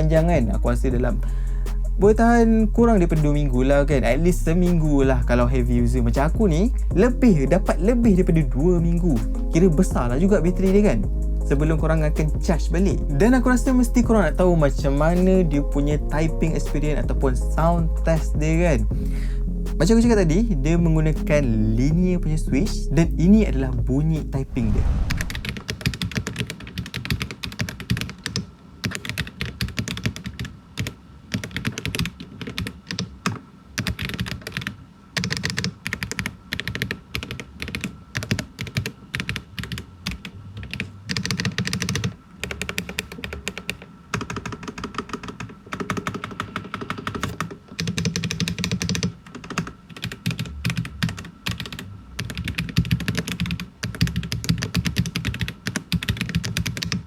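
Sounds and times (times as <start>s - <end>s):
mechanical keyboard typing: 25.5s - 57.0s.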